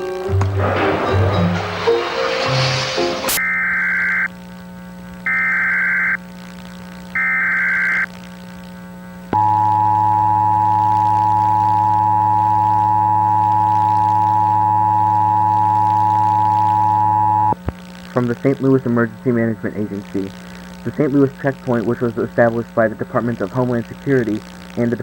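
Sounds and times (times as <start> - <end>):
warbling data bursts: 3.3 - 4.3, 5.3 - 6.2, 7.2 - 8.1, 9.4 - 17.6
low steady hum: 3.3 - 25.0
two-tone attention signal: 9.4 - 17.6.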